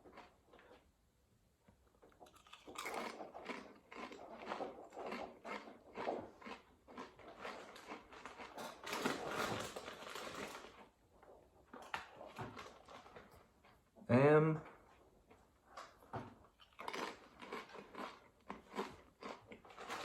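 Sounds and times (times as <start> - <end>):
person chewing crisps: 0.0 - 0.9, 2.0 - 11.0, 16.5 - 20.0.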